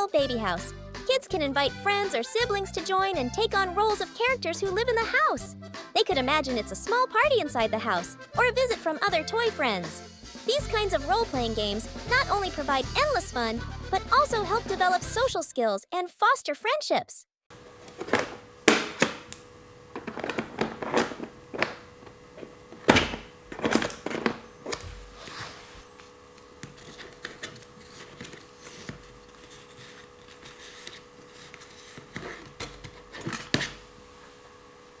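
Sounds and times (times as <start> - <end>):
faint steady hum: 17.5 - 35.0.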